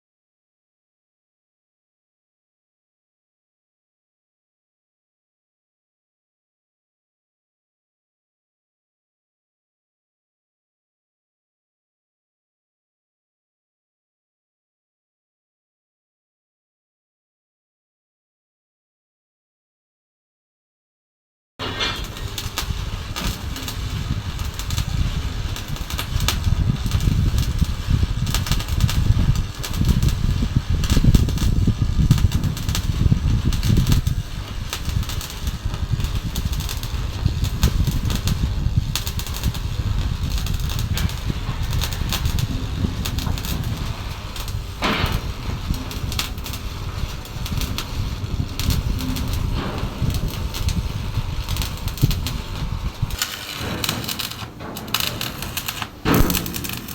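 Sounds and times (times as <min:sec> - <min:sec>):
arc welding crackling: 0:21.6 - 0:56.9
steady low rumble: 0:22.0 - 0:56.9.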